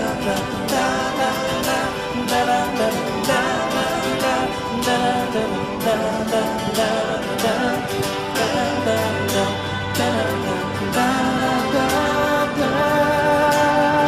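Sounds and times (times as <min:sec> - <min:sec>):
pop song with singing and guitar: 0:00.0 - 0:14.0.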